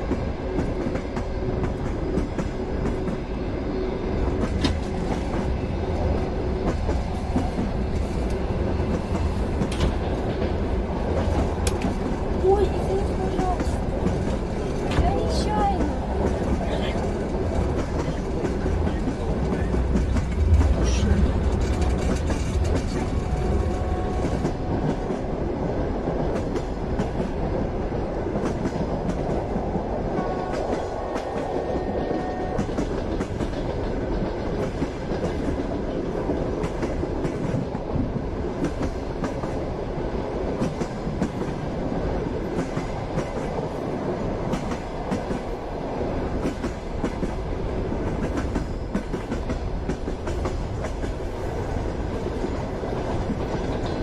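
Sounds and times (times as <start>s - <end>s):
train rumbling on rails: 0.0s - 54.0s
wheels clacking over rail joints: 4.3s - 25.2s.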